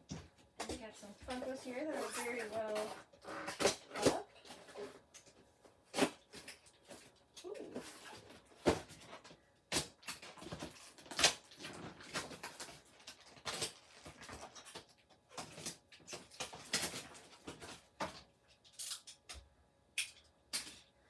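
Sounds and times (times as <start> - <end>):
cardboard boxes rustling: 0.7 - 5.0.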